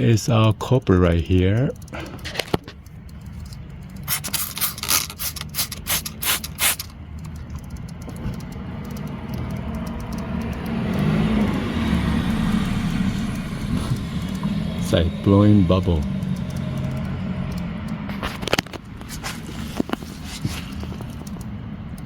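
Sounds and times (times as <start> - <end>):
sharp clicks: 0.0 - 22.0
motor vehicle going by: 5.3 - 22.0.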